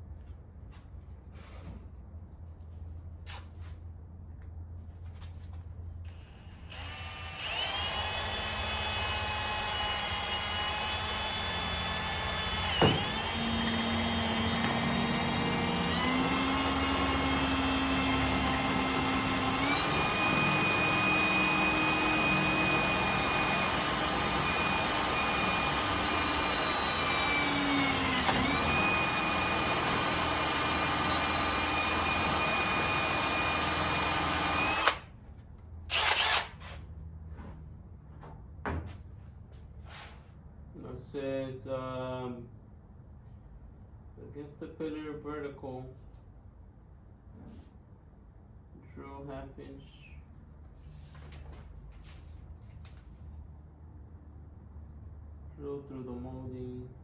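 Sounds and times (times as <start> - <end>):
electric drill boring metal: 6.1 - 35.0, 35.9 - 36.6.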